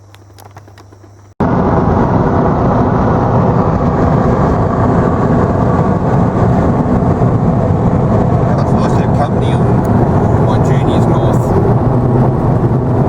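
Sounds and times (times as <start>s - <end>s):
road and engine rumble inside car: 0.0s - 13.0s.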